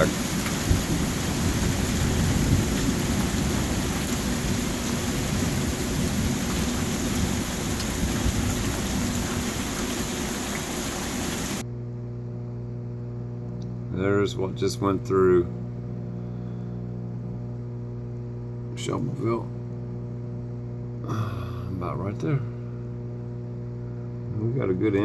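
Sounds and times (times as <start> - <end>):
heavy rain pouring: 0.0 - 11.6
low electrical hum: 0.0 - 25.0.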